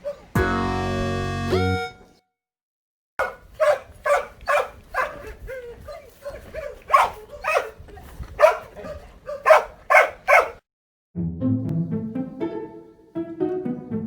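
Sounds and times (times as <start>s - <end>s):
dog barking: 0.0s - 0.3s, 3.2s - 7.8s, 8.4s - 10.6s
dog yelping: 0.0s - 0.3s, 3.2s - 7.8s, 8.4s - 10.6s.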